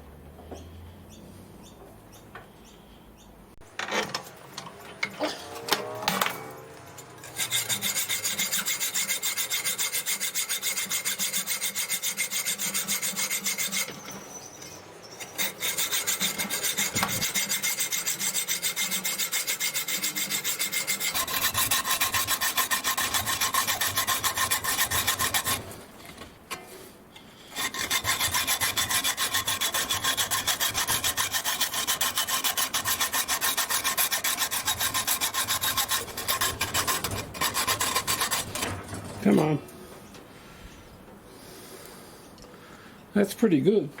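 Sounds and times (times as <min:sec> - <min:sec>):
hacksaw cutting metal: 0:03.8 - 0:14.2, 0:15.2 - 0:26.6, 0:27.5 - 0:39.2.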